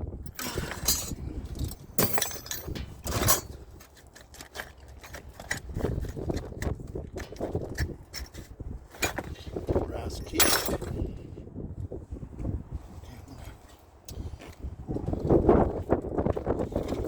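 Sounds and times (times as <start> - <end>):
metal hand tools clinking: 0.3 - 3.6, 10.2 - 11.0.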